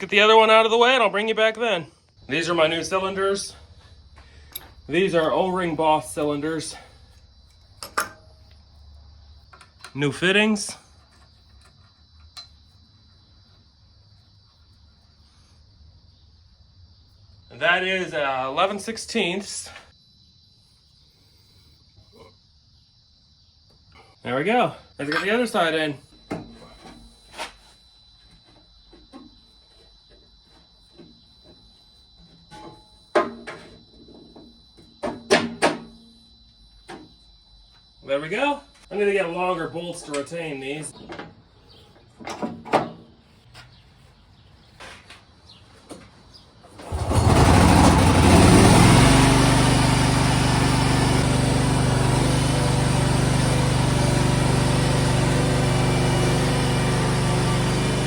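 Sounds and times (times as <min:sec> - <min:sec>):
metal clanks and knocks: 0:07.8 - 0:08.4, 0:32.4 - 0:34.4, 0:35.0 - 0:36.0
small engine starting and running: 0:46.8 - 0:58.0.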